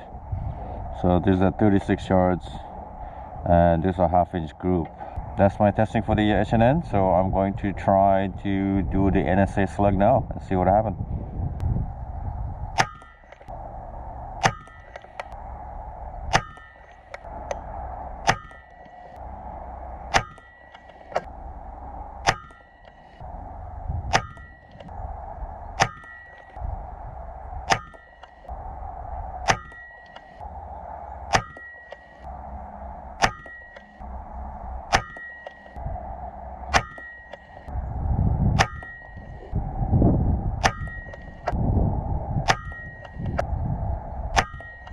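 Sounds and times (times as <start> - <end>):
air rifle shots: 12.7 - 13.6, 14.4 - 15.4, 16.3 - 17.6, 18.2 - 19.2, 20.0 - 21.3, 22.2 - 23.2, 24.1 - 25.0, 25.8 - 26.6, 27.6 - 28.6, 29.4 - 30.4, 31.2 - 32.3, 33.2 - 34.2, 34.9 - 35.8, 36.7 - 37.7, 38.6 - 39.6.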